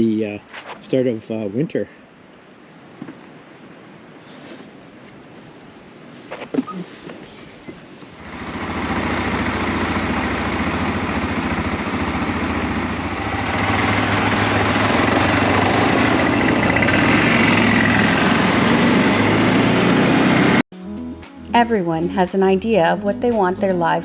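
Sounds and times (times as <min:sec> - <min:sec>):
atv engine running: 0:08.2 - 0:20.6.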